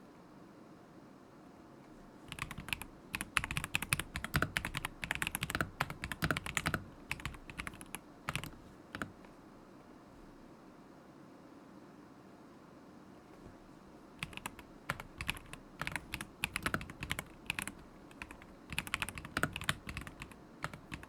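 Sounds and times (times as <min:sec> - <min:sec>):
typing on mechanical keyboard: 0:02.3 - 0:09.3, 0:14.2 - 0:21.0.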